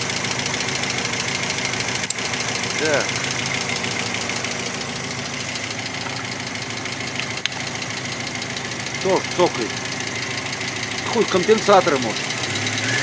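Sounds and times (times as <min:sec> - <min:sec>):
car engine idling: 0:00.0 - 0:13.0
engine ticking: 0:00.0 - 0:13.0.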